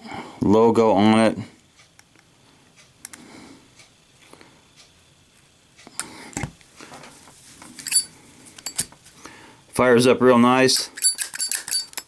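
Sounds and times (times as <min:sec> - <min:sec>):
bright metallic clink: 0:07.8 - 0:08.9, 0:10.8 - 0:12.0
lighter lid and wheel clicks: 0:10.8 - 0:12.0.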